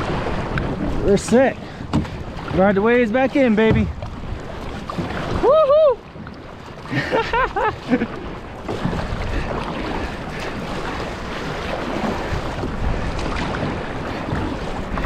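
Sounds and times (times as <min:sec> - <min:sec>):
ocean surf: 0:00.0 - 0:15.0
water rushing around a kayak: 0:00.0 - 0:15.0
wind buffeting microphone: 0:00.0 - 0:15.0.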